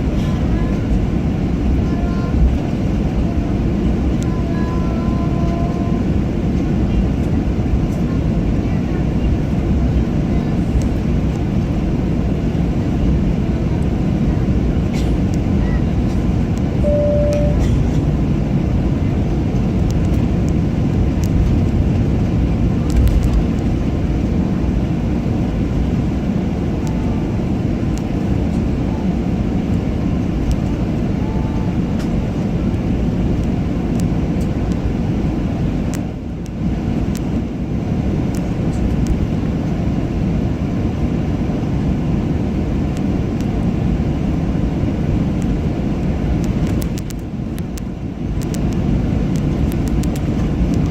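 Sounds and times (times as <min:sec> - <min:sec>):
jet engines rumbling in cabin: 0:00.0 - 0:50.9
short single tone: 0:16.8 - 0:18.0.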